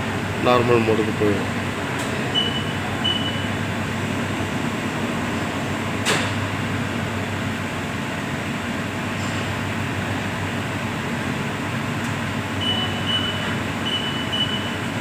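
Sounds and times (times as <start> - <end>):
machinery humming: 0.0 - 7.7.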